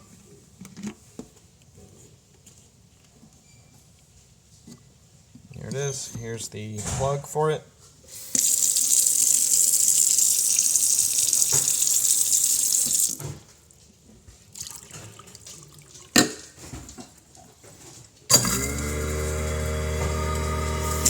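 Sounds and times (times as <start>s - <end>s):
faucet running water into sink: 8.2s - 13.2s, 18.3s - 21.0s.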